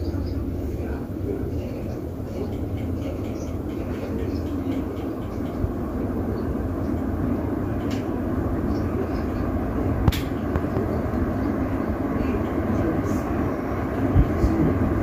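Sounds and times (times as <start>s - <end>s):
ceiling fans whooshing: 0.0s - 15.0s
sharp click: 10.1s - 10.3s.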